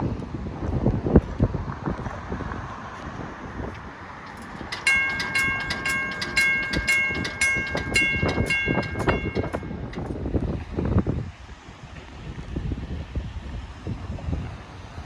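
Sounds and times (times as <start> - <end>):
railroad crossing bell ringing: 4.2 - 10.3.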